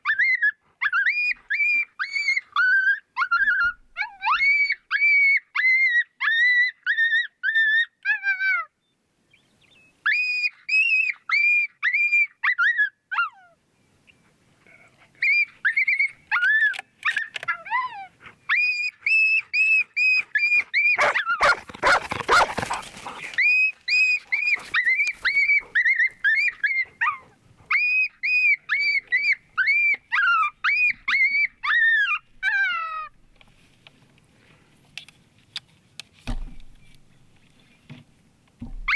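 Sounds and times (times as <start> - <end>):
dog yipping and whining: 0.0 - 8.6, 15.2 - 33.1.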